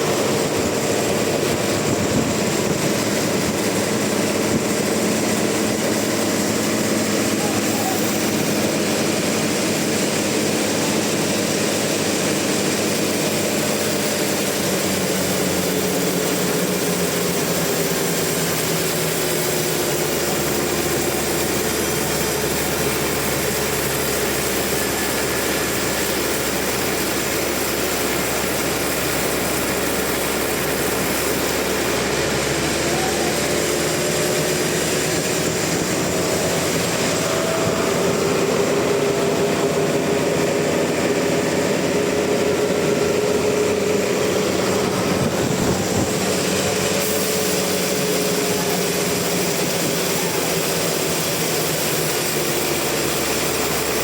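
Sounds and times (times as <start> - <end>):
sawmill machinery running: 0.0 - 54.0.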